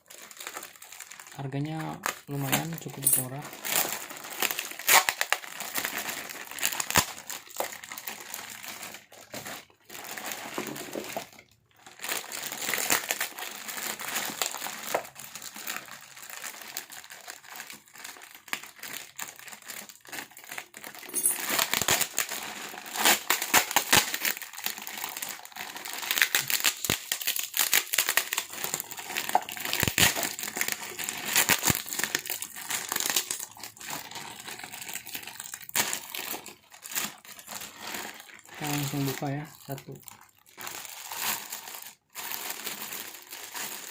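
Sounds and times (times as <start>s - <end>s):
packaging crinkling and rustling: 0.0s - 43.9s.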